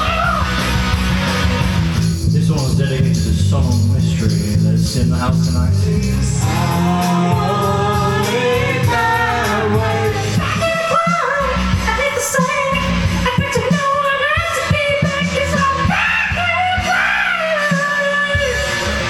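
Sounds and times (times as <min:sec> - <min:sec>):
pop backing track with bass beat: 0:00.0 - 0:19.0
person singing: 0:05.6 - 0:19.0.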